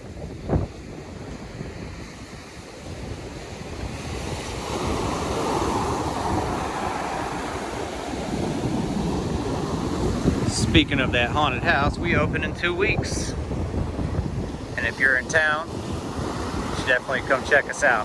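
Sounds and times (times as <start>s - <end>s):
ocean surf breaking: 0.0s - 18.0s
wind rumbling on microphone: 0.0s - 18.0s.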